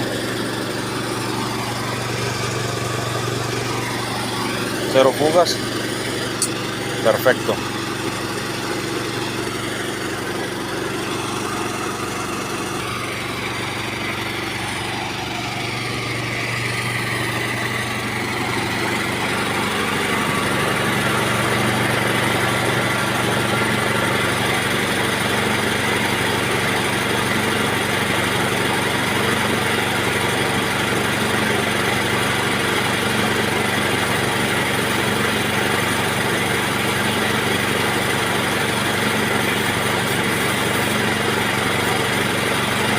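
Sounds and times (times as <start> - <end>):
motor humming: 0.0 - 42.9.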